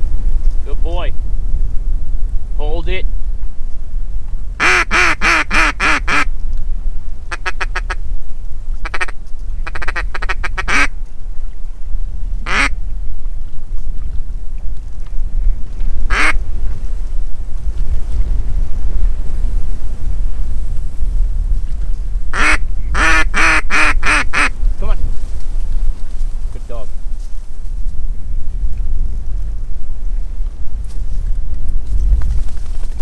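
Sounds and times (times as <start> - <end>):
wind rumble on microphone: 0.0 - 33.0
duck call quacks: 4.6 - 6.3, 7.3 - 8.0, 8.8 - 10.9, 12.5 - 12.8, 16.1 - 16.4, 22.3 - 24.5.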